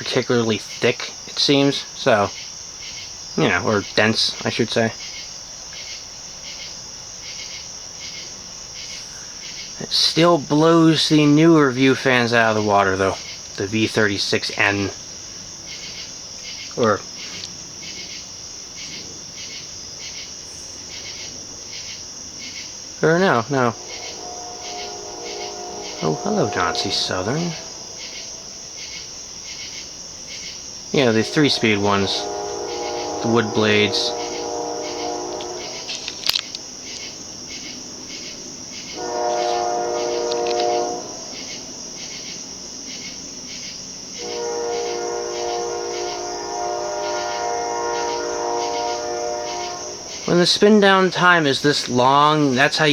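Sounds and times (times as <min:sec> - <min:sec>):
locomotive horn blasts: 0:00.0 - 0:02.3, 0:09.8 - 0:15.1, 0:16.7 - 0:17.2, 0:23.0 - 0:28.8, 0:30.9 - 0:38.1, 0:38.7 - 0:41.9, 0:44.2 - 0:52.9
crickets chirping: 0:00.0 - 0:52.9
insects trilling: 0:00.0 - 0:52.9.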